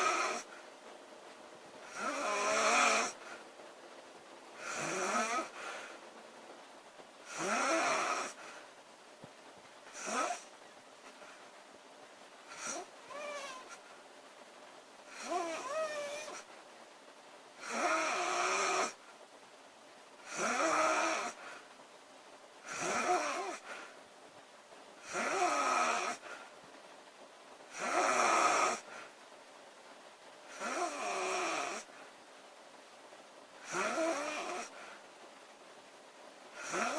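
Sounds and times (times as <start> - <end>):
woman snoring: 0.0 - 0.6, 1.8 - 3.4, 4.6 - 5.9, 7.2 - 8.5, 9.9 - 10.5, 12.5 - 13.8, 15.1 - 16.5, 17.6 - 19.0, 20.2 - 21.5, 22.6 - 23.8, 25.0 - 26.3, 27.7 - 28.9, 30.5 - 31.9, 33.6 - 34.8, 36.5 - 36.9.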